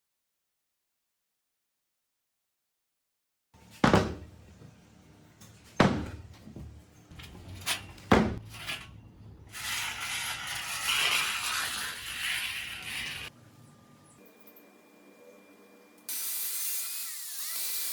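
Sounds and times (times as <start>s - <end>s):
sharp knocks: 3.8s - 4.3s.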